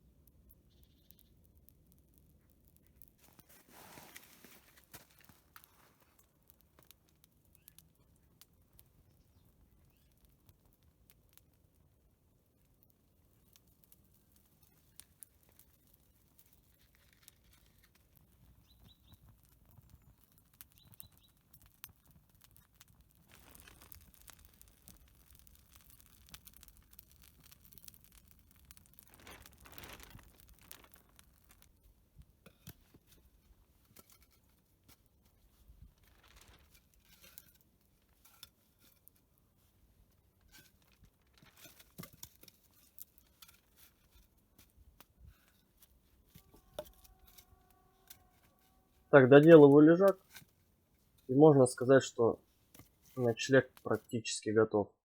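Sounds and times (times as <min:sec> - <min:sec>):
soft rustles: 0:03.2 - 0:06.4, 0:22.5 - 0:51.3.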